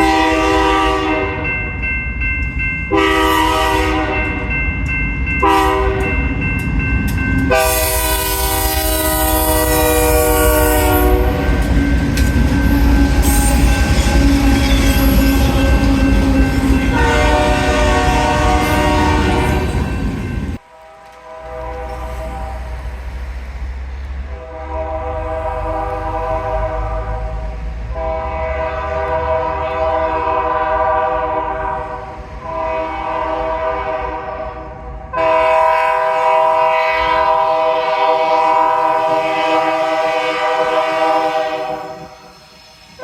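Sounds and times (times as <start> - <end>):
locomotive air horn blowing: 0.0 - 1.5, 2.9 - 4.5, 5.4 - 6.1, 7.5 - 11.7, 16.9 - 19.8, 20.6 - 22.8, 24.3 - 42.2
locomotive rumble: 2.4 - 35.6
wheels clacking on rail joints: 8.8 - 22.4.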